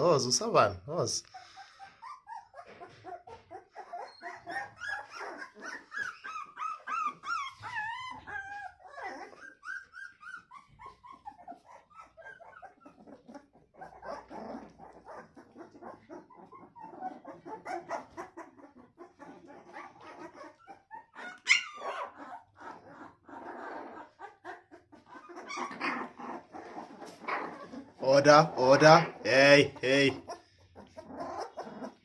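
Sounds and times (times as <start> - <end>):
puppies yapping and whimpering: 1.2 - 32.0
puppy high yelp: 2.0 - 18.6, 19.2 - 23.1, 23.9 - 26.5.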